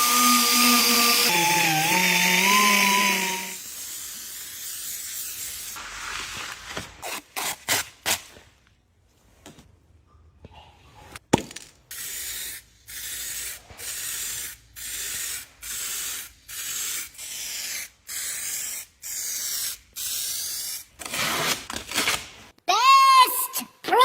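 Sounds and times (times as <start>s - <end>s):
hand sanding strokes: 0.0s - 5.9s.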